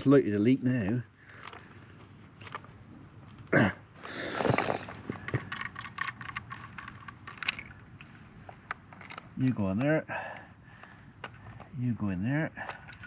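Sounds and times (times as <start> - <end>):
rustling scrape: 4.2 - 5.5.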